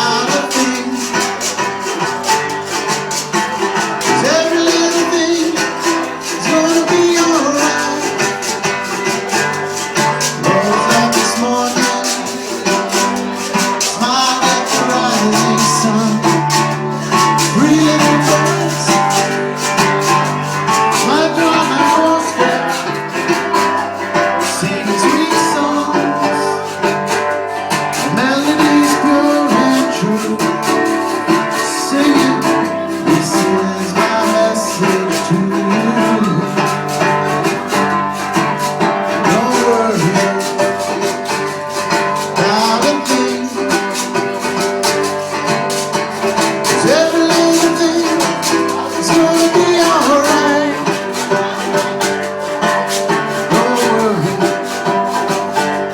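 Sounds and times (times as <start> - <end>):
acoustic guitar strumming: 0.0 - 55.9
person singing: 0.0 - 55.9.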